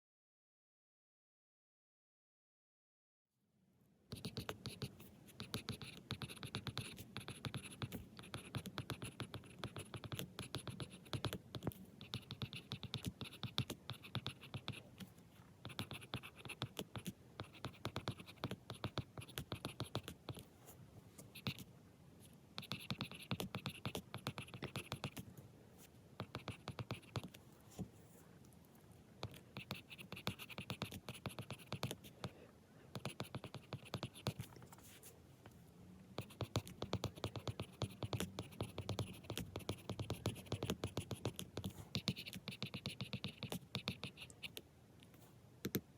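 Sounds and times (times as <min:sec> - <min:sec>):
pen scratching on paper: 0:04.1 - 0:14.8, 0:15.6 - 0:20.4, 0:22.6 - 0:25.2, 0:26.2 - 0:27.4, 0:29.2 - 0:32.1, 0:32.9 - 0:35.0, 0:36.2 - 0:44.5.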